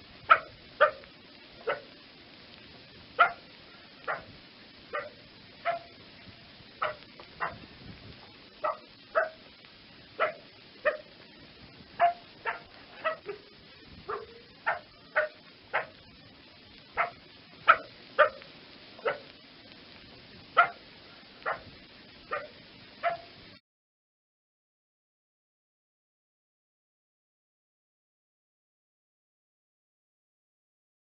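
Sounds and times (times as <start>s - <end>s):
dog barking: 0.3s - 1.9s, 3.2s - 3.4s, 4.0s - 4.3s, 4.9s - 6.0s, 6.8s - 7.6s, 8.6s - 9.4s, 10.2s - 11.1s, 12.0s - 13.5s, 14.1s - 16.0s, 17.0s - 19.3s, 20.6s - 20.8s, 21.4s - 21.7s, 22.3s - 23.4s.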